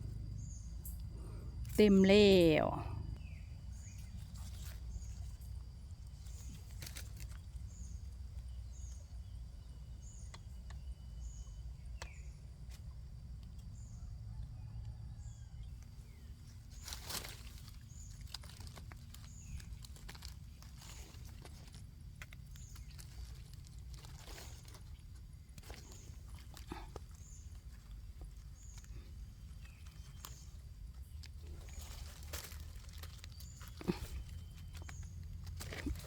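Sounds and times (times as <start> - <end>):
rustle of leaf litter: 3.7 - 9.0, 16.0 - 36.0.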